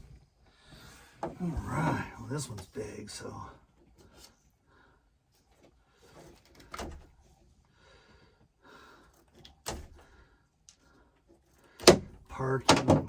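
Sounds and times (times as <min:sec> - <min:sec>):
faint knocks and clicks of handling parts: 0:05.3 - 0:07.8, 0:08.4 - 0:13.0.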